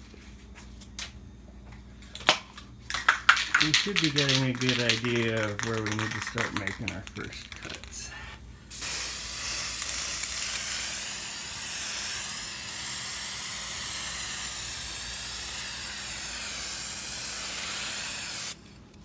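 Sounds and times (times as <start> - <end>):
spray paint can hissing: 2.9 - 7.9, 8.7 - 18.6.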